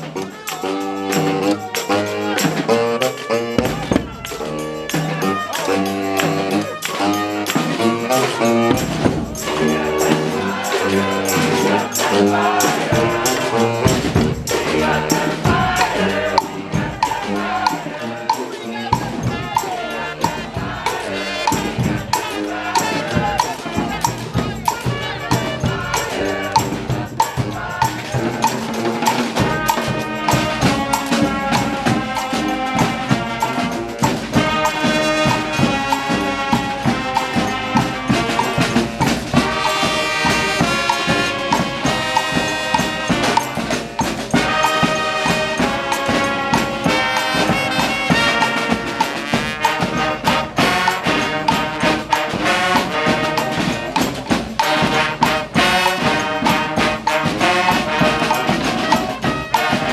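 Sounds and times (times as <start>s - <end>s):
horns in harmony: 0.0s - 59.9s
percussion beat: 0.0s - 59.9s.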